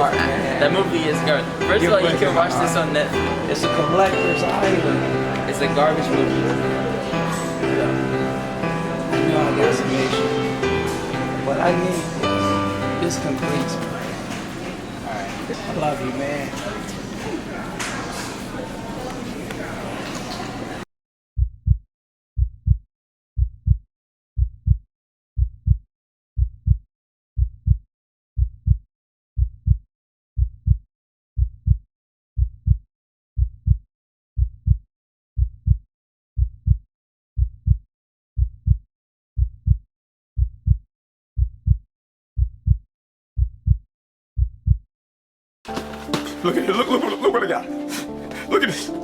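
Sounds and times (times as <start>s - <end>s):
heartbeat thumping: 21.4s - 21.8s, 22.4s - 22.8s, 23.4s - 23.8s, 24.4s - 24.8s, 25.4s - 25.8s, 26.4s - 26.8s, 27.4s - 27.8s, 28.4s - 28.8s, 29.4s - 29.8s, 30.4s - 30.8s, 31.4s - 31.8s, 32.4s - 32.8s, 33.4s - 33.8s, 34.4s - 34.8s, 35.4s - 35.8s, 36.4s - 36.8s, 37.4s - 37.8s, 38.4s - 38.8s, 39.4s - 39.8s, 40.4s - 40.8s, 41.4s - 41.8s, 42.4s - 42.8s, 43.4s - 43.8s, 44.4s - 44.8s.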